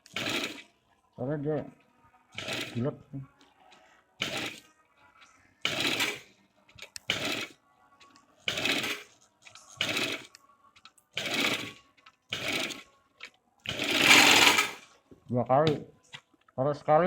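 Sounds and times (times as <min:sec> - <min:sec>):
overlock sewing machine running: 0:00.0 - 0:00.6, 0:02.4 - 0:02.8, 0:04.2 - 0:04.6, 0:05.6 - 0:06.2, 0:07.1 - 0:07.5, 0:08.5 - 0:09.1, 0:09.8 - 0:10.3, 0:11.2 - 0:12.8, 0:13.7 - 0:14.8.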